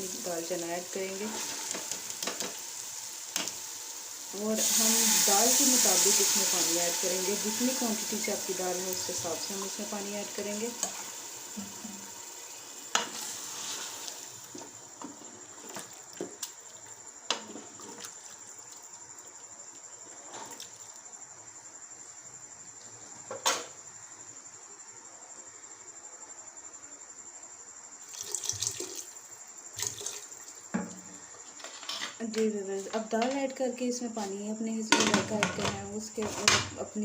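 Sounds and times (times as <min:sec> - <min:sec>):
water pouring into pot: 0:00.0 - 0:14.7, 0:28.0 - 0:30.5.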